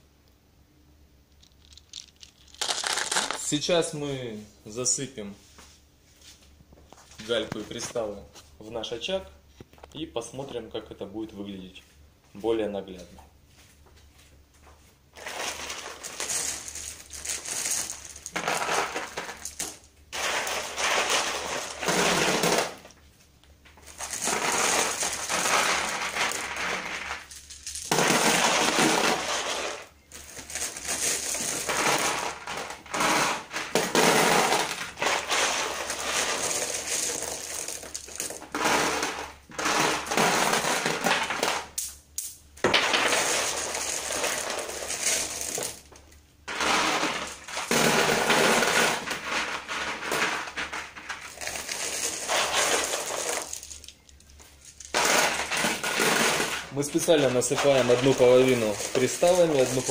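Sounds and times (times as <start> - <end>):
pebbles clattering when poured: 1.3 - 3.7, 15.2 - 23.0, 23.8 - 41.8, 42.6 - 59.9.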